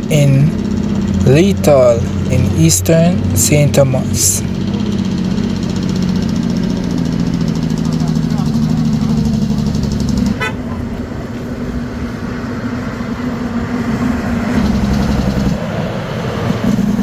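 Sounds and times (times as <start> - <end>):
passing vehicles: 0.0 - 17.0
vehicle horn blasts: 10.4 - 10.9.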